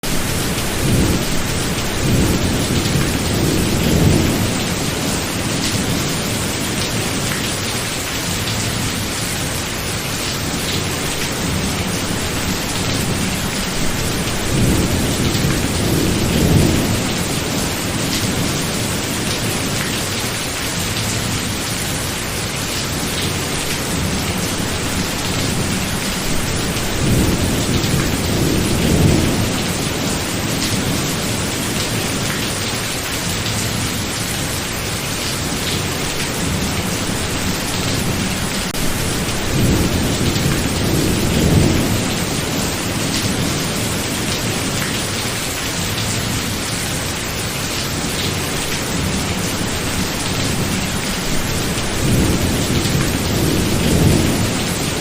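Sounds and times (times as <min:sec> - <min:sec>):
steady rain: 0:00.0 - 0:55.0
rolling thunder: 0:48.2 - 0:55.0.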